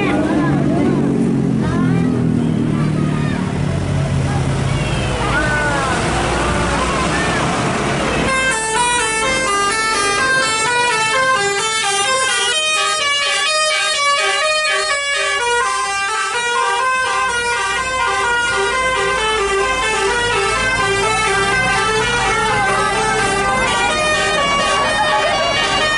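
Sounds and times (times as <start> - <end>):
bus horn playing a fast melody: 8.1 - 25.9.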